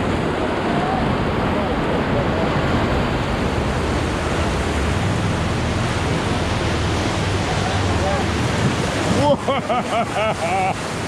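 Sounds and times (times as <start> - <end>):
whitewater rushing through rapids: 0.0 - 11.0.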